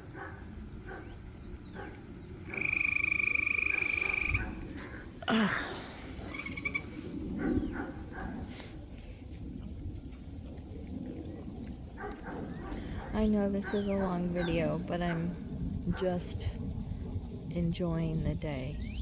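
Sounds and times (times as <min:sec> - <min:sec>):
animal high pulsing trill: 0:02.5 - 0:04.7.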